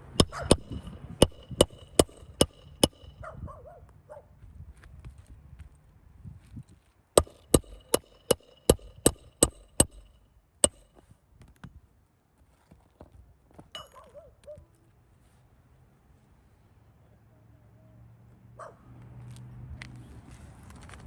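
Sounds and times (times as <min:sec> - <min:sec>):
hammer striking nail: 0:00.1 - 0:03.2, 0:07.2 - 0:11.0.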